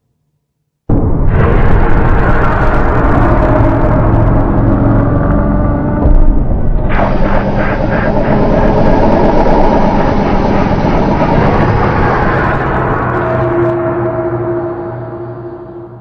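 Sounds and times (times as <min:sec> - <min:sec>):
harsh rumbling monster roar: 0:00.9 - 0:16.0.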